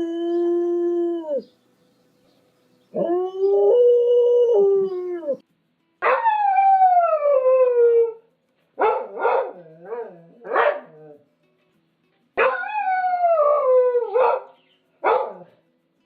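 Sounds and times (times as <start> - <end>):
dog howling: 2.9 - 5.4.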